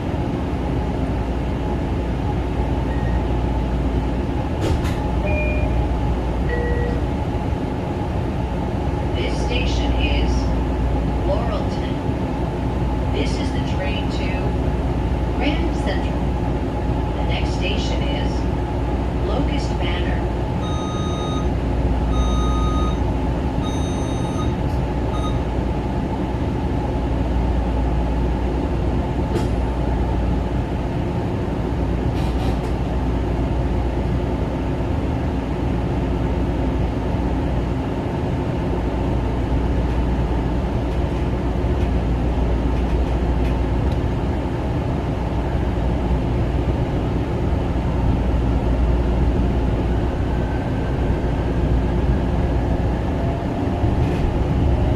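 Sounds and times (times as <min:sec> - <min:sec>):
train wheels rumbling on rails: 0:00.0 - 0:20.8, 0:23.1 - 0:54.9
short high beeps: 0:05.2 - 0:05.8, 0:20.6 - 0:21.5, 0:22.1 - 0:23.0, 0:23.6 - 0:24.6.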